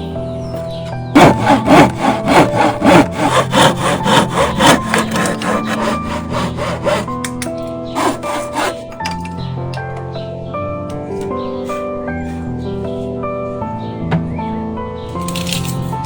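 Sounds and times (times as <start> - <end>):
background music: 0.0 - 16.0
hand saw cutting wood: 1.2 - 9.0.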